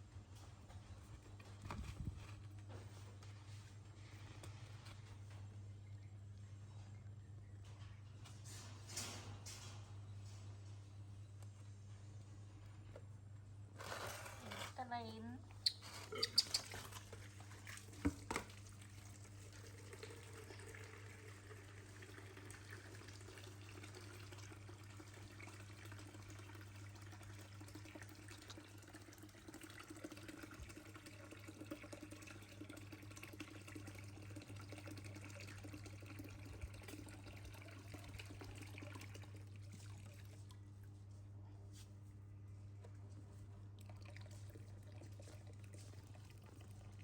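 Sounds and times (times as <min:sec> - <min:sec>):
low steady hum: 0:00.0 - 0:47.0
faint running water: 0:13.8 - 0:41.4, 0:42.4 - 0:47.0.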